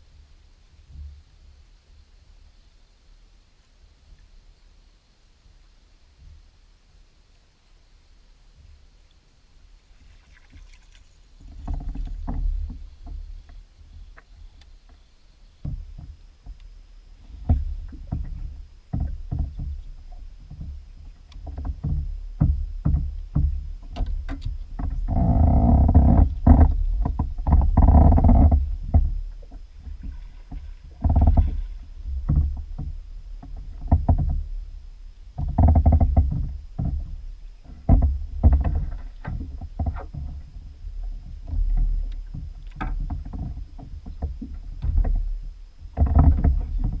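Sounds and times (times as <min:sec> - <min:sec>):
hollow knocks on plastic kayak: 0:17.3 - 0:34.5.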